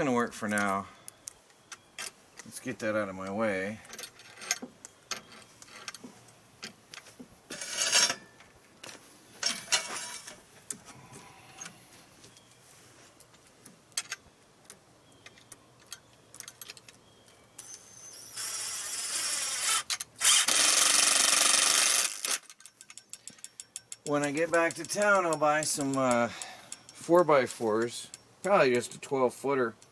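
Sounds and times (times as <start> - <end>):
cordless drill driving screws: 17.6 - 22.5.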